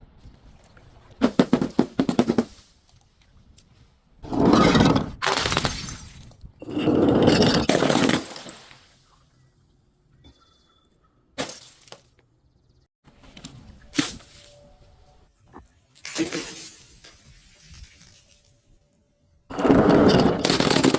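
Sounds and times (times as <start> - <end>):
glass crushing and shattering: 4.6 - 8.9.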